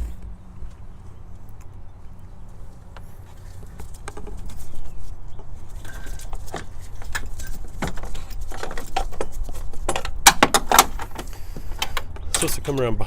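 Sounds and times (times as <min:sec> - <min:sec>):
low rumble: 0:00.0 - 0:00.9.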